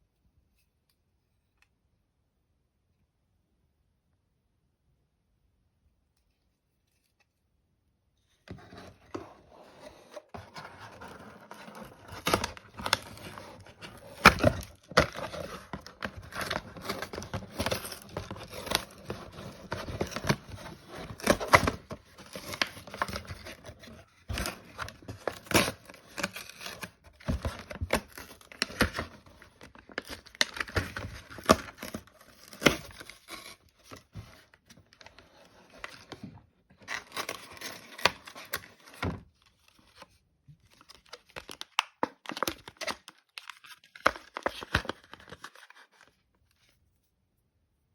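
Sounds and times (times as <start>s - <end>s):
plastic and cardboard crinkling: 8.5s - 46.7s.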